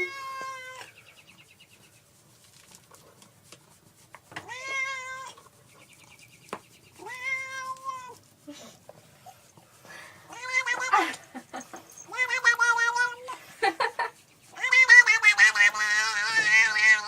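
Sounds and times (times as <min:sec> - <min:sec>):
cat meowing: 0:00.0 - 0:00.9, 0:04.4 - 0:05.4, 0:07.0 - 0:08.2, 0:10.3 - 0:11.1, 0:12.0 - 0:13.4, 0:14.6 - 0:17.0.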